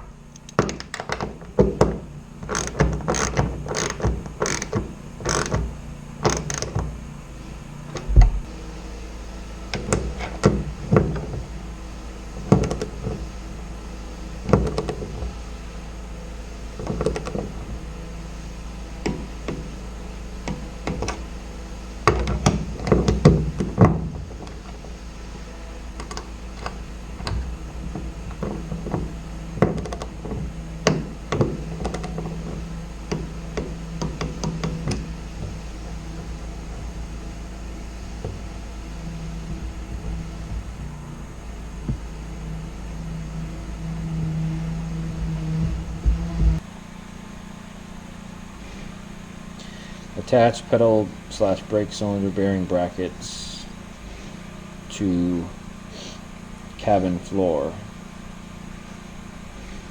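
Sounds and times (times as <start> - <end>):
low hum: 0.0 - 46.6
heavy thump: 7.8 - 8.7, 22.1 - 46.7.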